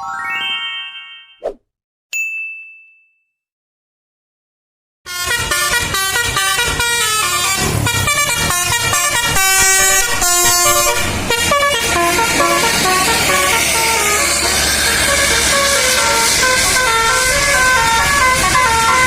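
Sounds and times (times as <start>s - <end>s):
bus air horn playing a tune: 5.1s - 19.0s.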